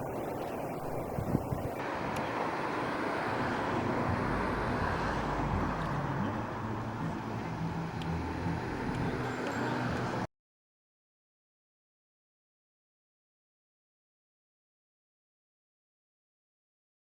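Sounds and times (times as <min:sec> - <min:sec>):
low engine hum: 0:00.0 - 0:10.3
passing traffic rush: 0:00.0 - 0:10.3.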